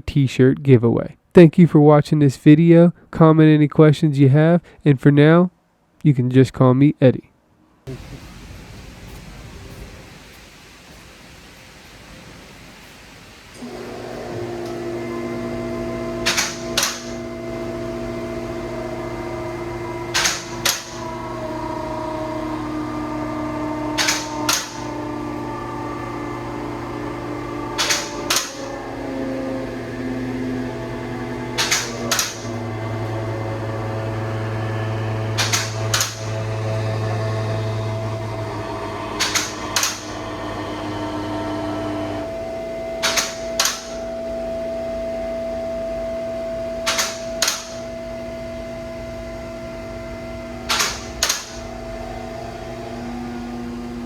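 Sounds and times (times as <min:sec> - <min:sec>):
hydraulic pump motor: 0:07.9 - 0:54.0
safety locks clacking: 0:23.9 - 0:25.0, 0:27.7 - 0:28.8, 0:31.6 - 0:32.6, 0:43.0 - 0:44.0, 0:46.8 - 0:47.8, 0:50.6 - 0:51.7.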